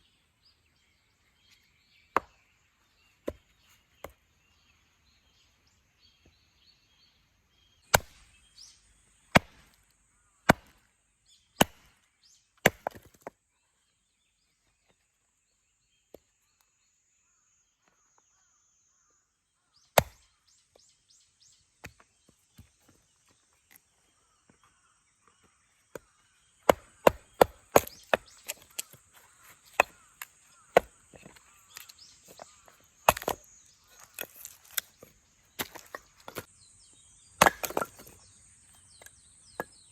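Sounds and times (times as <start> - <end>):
axe chopping firewood: 2.2 - 2.4, 3.2 - 3.4, 7.9 - 8.5, 9.2 - 10.9, 11.6 - 13.4, 20.0 - 20.3, 25.9 - 36.5, 37.3 - 38.3.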